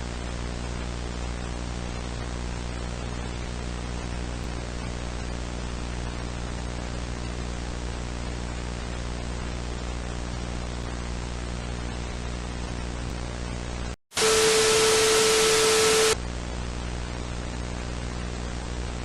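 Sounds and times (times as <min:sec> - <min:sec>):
static hiss: 0:14.1 - 0:16.2
steady mid-pitched tone: 0:14.2 - 0:16.2.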